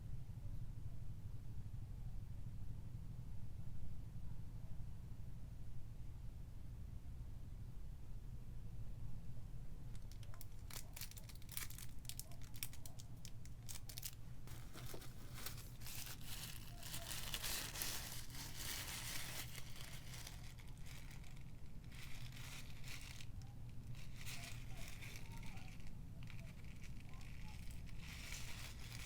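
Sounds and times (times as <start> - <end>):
steady low hum: 0.0 - 29.0
packaging crinkling and tearing: 10.0 - 29.0.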